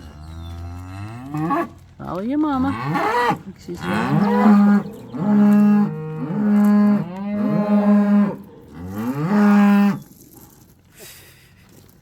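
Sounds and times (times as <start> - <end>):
cow mooing loudly: 2.6 - 10.0.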